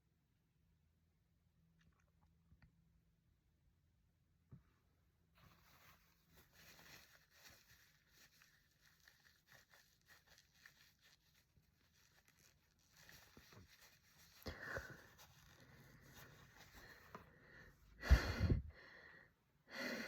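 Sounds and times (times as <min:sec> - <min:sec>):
faint room hiss: 0:00.8 - 0:20.0
small rustles and clicks: 0:05.4 - 0:17.3.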